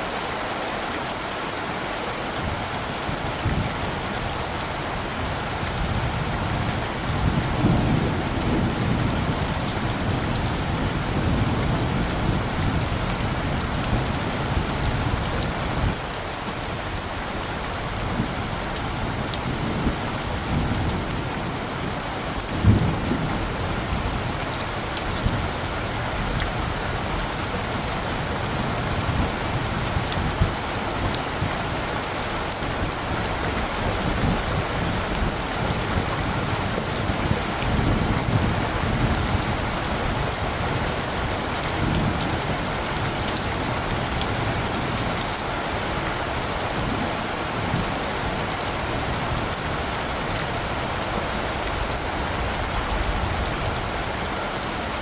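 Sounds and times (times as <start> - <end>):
steady rain falling: 0.0 - 55.0
low rumbles of thunder: 2.5 - 16.1, 17.8 - 45.8
raindrops ticking: 17.7 - 55.0.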